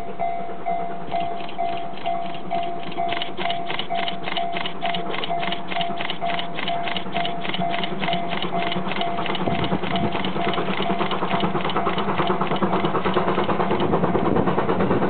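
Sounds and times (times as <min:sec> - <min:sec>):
level crossing alarm ringing: 0:00.2 - 0:11.2.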